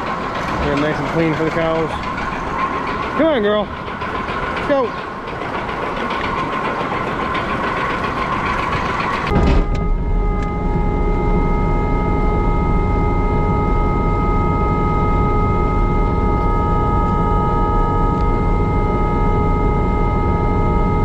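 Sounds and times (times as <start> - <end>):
farm machinery rattling: 0.0 - 9.7
low machine hum: 0.0 - 21.0.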